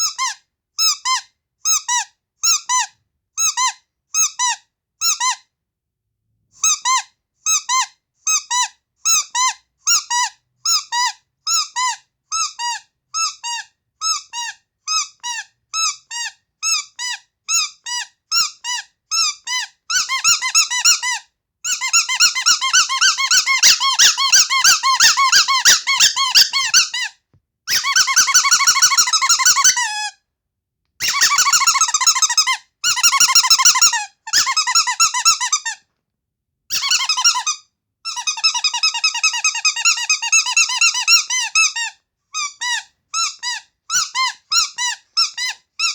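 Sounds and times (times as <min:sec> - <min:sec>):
rubber squeaky toy squeaking: 0:00.0 - 0:05.5, 0:06.6 - 0:30.2, 0:31.0 - 0:35.9, 0:36.7 - 0:45.9.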